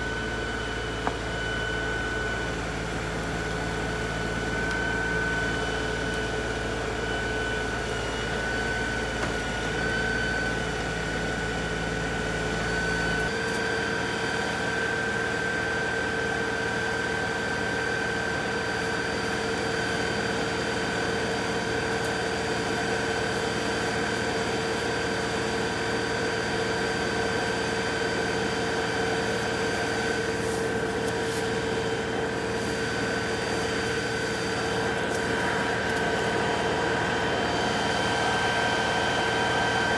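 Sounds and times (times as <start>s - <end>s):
diesel tractor engine running: 0.0s - 39.9s.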